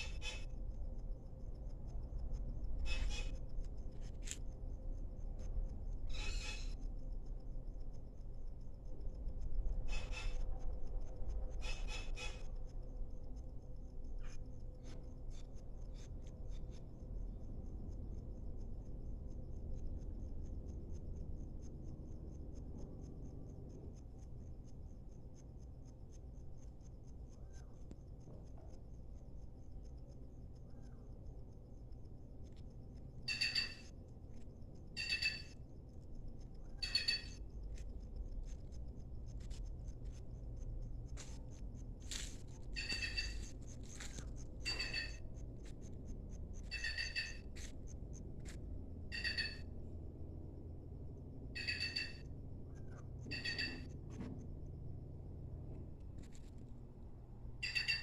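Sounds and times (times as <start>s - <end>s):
small birds chirping: 0.0s - 4.4s, 6.0s - 7.4s, 25.6s - 48.3s, 49.1s - 49.7s
low background rumble: 0.0s - 57.9s.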